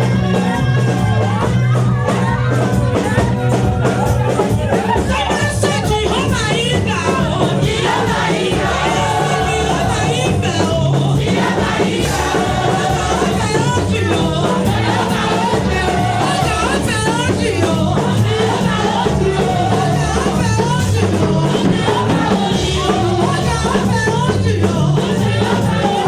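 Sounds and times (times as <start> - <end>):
bass line: 0.0 - 26.0
drums: 0.0 - 26.0
gospel choir singing: 0.0 - 26.0.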